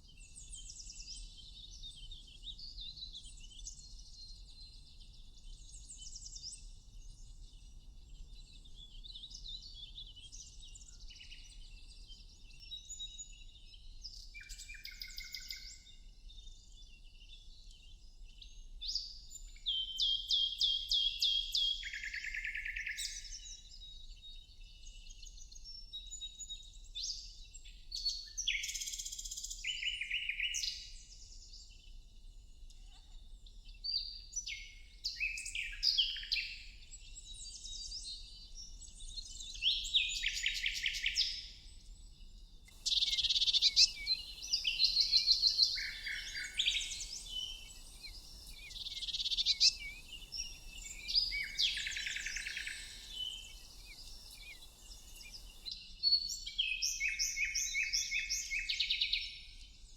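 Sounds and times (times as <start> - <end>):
soft background hiss: 42.7 - 55.7
birds chirping and singing: 42.8 - 55.7.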